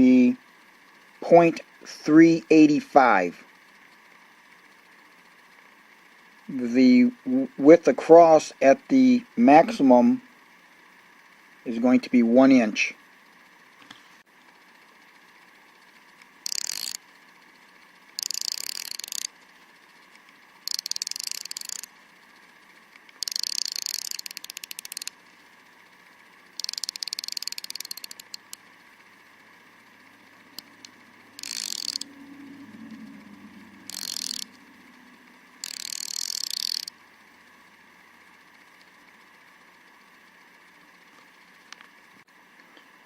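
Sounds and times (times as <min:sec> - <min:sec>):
ratchet clicking: 0:15.9 - 0:25.2, 0:26.4 - 0:28.7, 0:29.9 - 0:32.2, 0:33.7 - 0:37.0.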